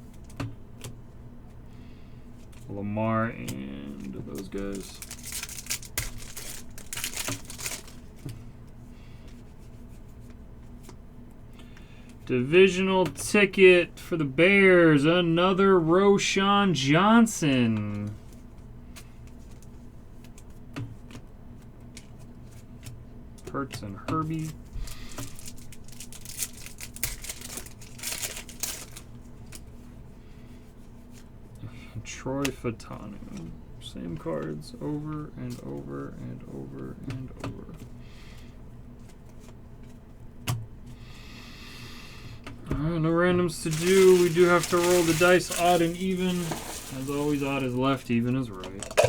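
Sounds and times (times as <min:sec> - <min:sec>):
faint steady hum: 0:00.0 - 0:49.0
foil wrappers crinkling: 0:03.4 - 0:08.3, 0:24.3 - 0:29.7, 0:43.4 - 0:49.0.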